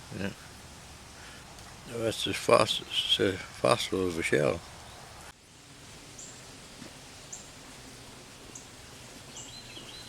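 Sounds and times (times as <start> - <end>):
bird chirping: 2.7 - 5.2, 6.2 - 6.5, 7.3 - 7.6, 8.5 - 10.0.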